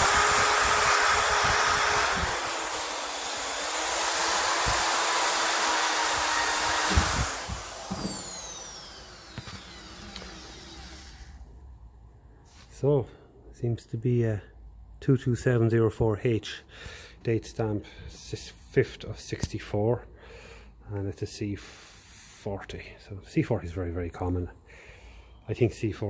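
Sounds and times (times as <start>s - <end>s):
power tool running: 0.0s - 11.5s.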